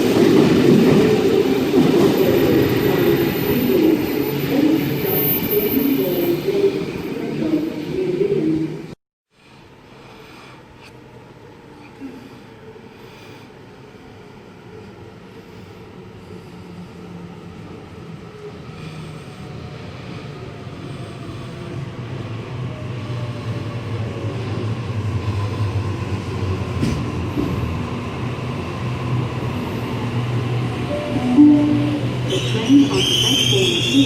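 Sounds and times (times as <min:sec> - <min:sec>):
electric train approaching: 0:00.0 - 0:08.9, 0:13.7 - 0:34.0.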